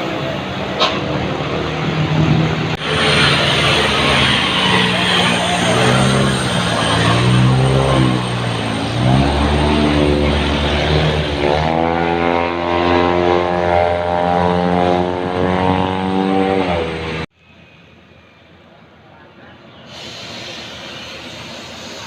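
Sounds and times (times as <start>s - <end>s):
bus engine rumble: 0.0s - 12.2s, 16.7s - 22.0s
melodic air horn: 11.4s - 16.9s.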